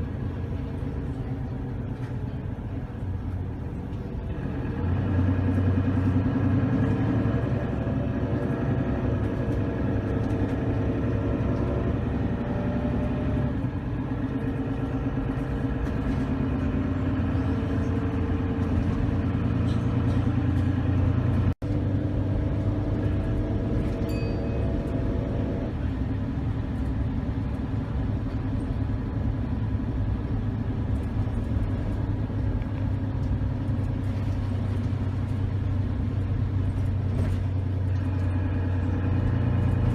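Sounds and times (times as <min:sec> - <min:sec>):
diesel bus engine running: 0:00.0 - 0:39.9.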